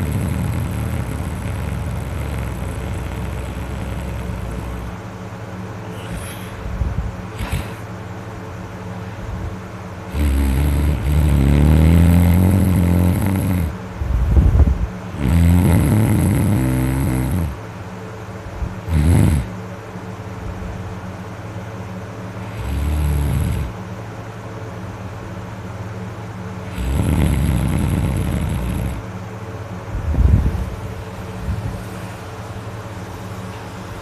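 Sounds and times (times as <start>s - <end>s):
person snoring loudly: 0.0s - 5.0s, 5.9s - 6.6s, 7.3s - 7.9s, 10.1s - 13.8s, 15.1s - 17.6s, 18.8s - 19.5s, 22.4s - 23.8s, 26.6s - 29.0s
quiet breathing: 5.8s - 8.0s.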